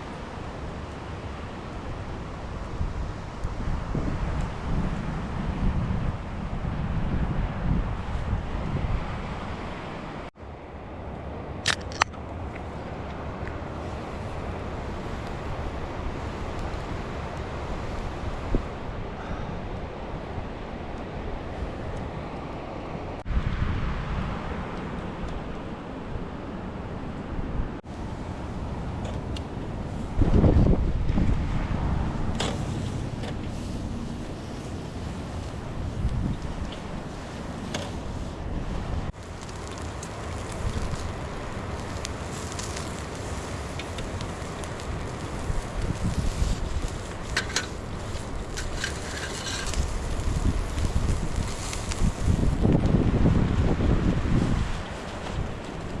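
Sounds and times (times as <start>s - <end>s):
wind buffeting the microphone: 0.0s - 10.3s, 11.2s - 56.0s
outdoor rushing noise: 0.0s - 56.0s
wood fire crackling and popping: 11.6s - 12.2s, 13.4s - 18.0s, 32.2s - 56.0s.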